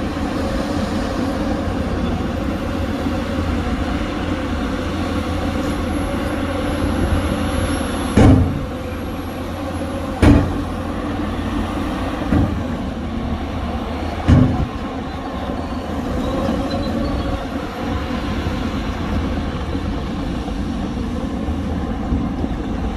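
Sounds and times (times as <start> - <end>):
heavy diesel machinery running: 0.0 - 22.9
loud bangs: 14.2 - 14.8.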